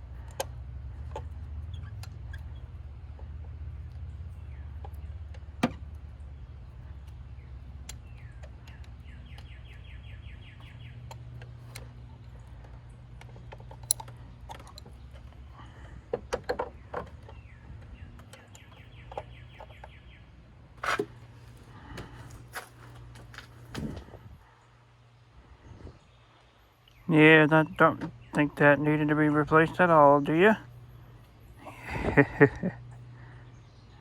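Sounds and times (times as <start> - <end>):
steady low hum: 0.0 - 34.0
bird singing with trill: 6.2 - 11.7, 16.8 - 20.4, 26.0 - 31.1.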